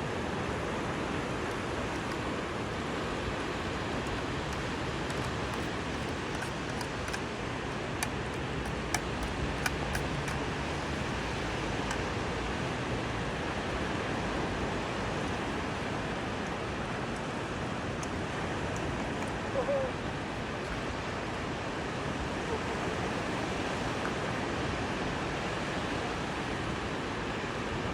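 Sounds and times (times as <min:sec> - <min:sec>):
sea water washing: 0:00.4 - 0:19.5
light clicks: 0:04.0 - 0:12.2.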